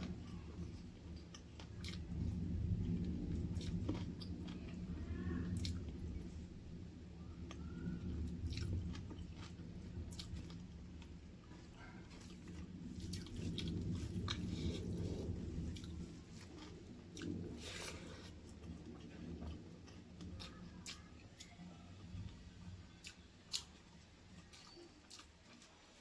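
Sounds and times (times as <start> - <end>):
person chewing: 0.0 - 6.3, 7.5 - 26.0
crunches while chewing: 23.0 - 26.0.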